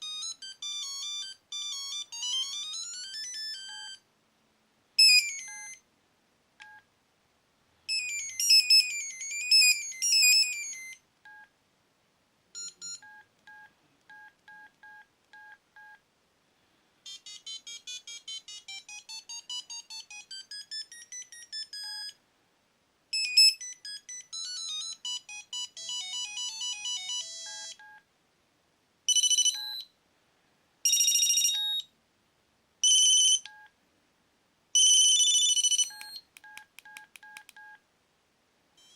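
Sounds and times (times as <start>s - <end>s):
mobile phone ringtones: 0.0s - 4.0s, 5.0s - 5.8s, 7.9s - 11.5s, 12.6s - 16.0s, 17.1s - 22.2s, 23.2s - 28.0s, 29.1s - 29.9s, 30.9s - 31.9s, 32.8s - 33.7s, 34.8s - 37.8s.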